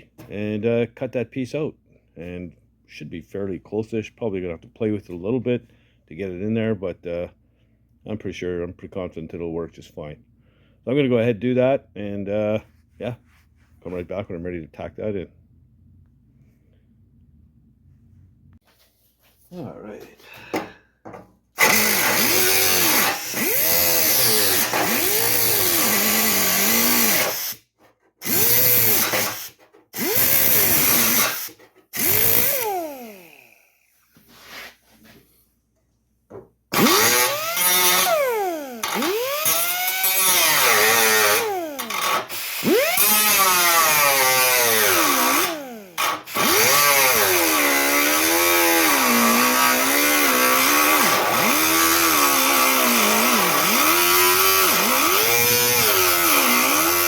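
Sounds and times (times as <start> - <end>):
grinder cutting sheet steel: 21.6 - 27.6, 28.2 - 33.7, 36.7 - 57.0.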